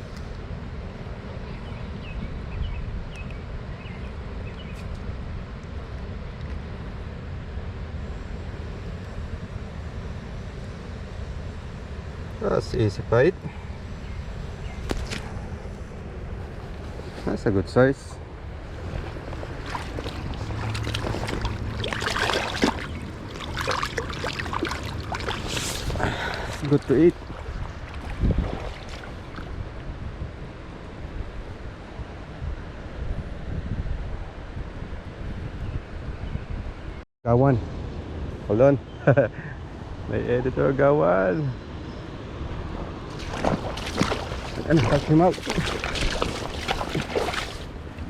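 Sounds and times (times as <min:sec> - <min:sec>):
low outdoor rumble: 0:00.0 - 0:32.2
river water splashing: 0:18.3 - 0:30.0, 0:42.6 - 0:48.0.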